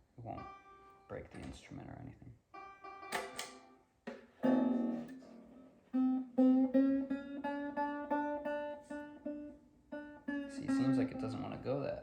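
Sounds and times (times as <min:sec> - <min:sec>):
banjo strings strummed together: 0:00.2 - 0:01.8, 0:02.5 - 0:05.4, 0:06.0 - 0:12.0
banjo string plucked while tuning: 0:02.5 - 0:05.4, 0:06.0 - 0:12.0.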